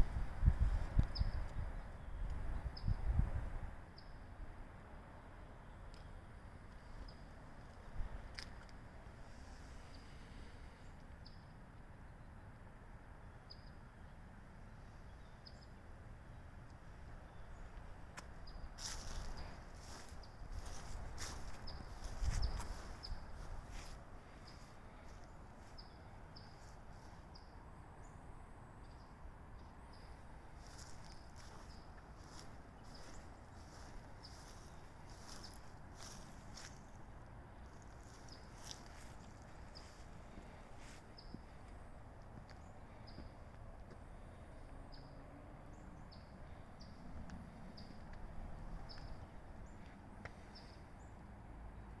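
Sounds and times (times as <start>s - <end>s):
small bird chirping: 1.1s - 3.0s.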